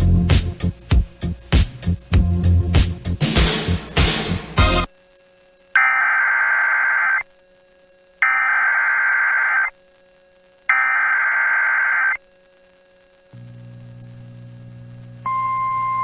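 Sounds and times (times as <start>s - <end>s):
low steady hum: 4.8s - 16.0s
buzzy digital data tones: 5.7s - 7.3s, 8.2s - 12.3s.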